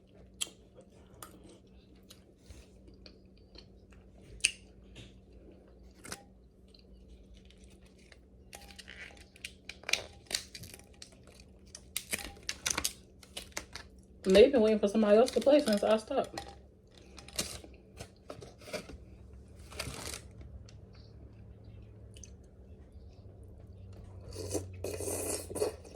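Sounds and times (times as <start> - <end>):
faint hum: 0.0 - 25.9
person chewing: 20.9 - 23.2, 24.0 - 25.9.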